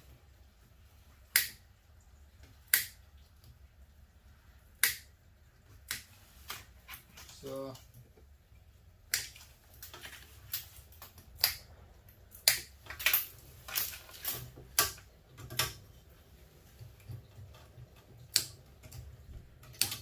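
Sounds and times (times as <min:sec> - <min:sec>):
wire harness clips clicking: 0:18.3 - 0:20.0.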